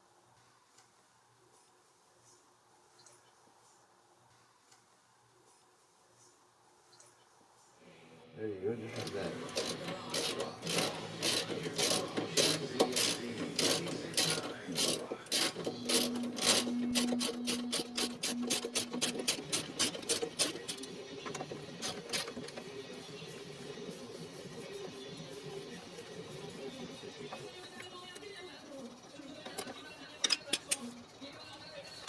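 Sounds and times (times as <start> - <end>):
ratchet wrench clicking: 9.6 - 20.8.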